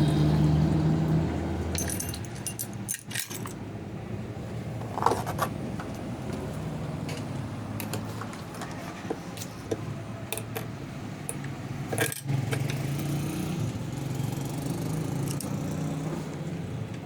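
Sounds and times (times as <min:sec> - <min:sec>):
metal tools clinking and jingling: 0:01.7 - 0:03.6, 0:11.9 - 0:12.7.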